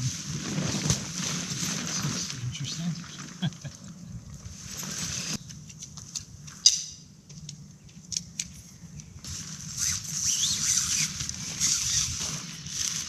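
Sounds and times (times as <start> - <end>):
nylon tent fabric rustling: 0.0 - 5.4, 9.2 - 13.0
tent parts clicking and knocking: 4.8 - 13.0.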